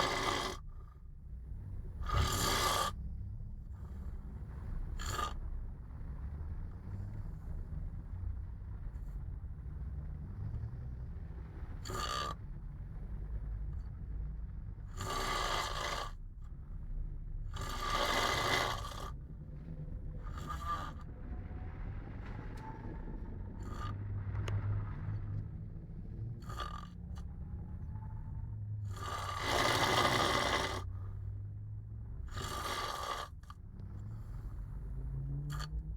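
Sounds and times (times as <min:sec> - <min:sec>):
man snoring raspily: 0:00.0 - 0:00.6, 0:01.9 - 0:03.0, 0:04.9 - 0:05.4, 0:11.8 - 0:12.4, 0:14.9 - 0:16.2, 0:17.6 - 0:19.1, 0:20.2 - 0:21.0, 0:23.6 - 0:23.9, 0:26.4 - 0:27.0, 0:28.9 - 0:30.9, 0:32.3 - 0:34.2, 0:35.5 - 0:35.8
steady low hum: 0:00.0 - 0:35.9.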